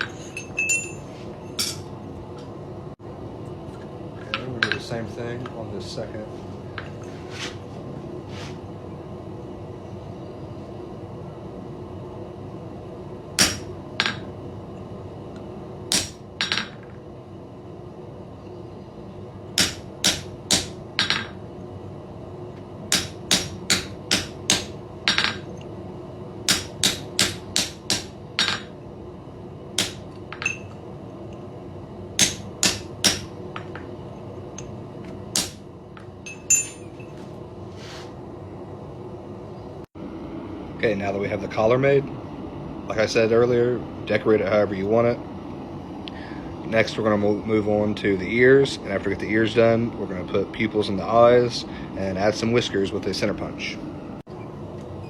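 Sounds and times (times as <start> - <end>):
steady hum: 0.0 - 55.0
hammer striking chisel on iron: 13.4 - 14.2, 15.9 - 16.8, 19.6 - 21.3, 22.9 - 25.4, 26.5 - 28.7, 29.8 - 30.7, 32.2 - 33.8, 35.4 - 35.6.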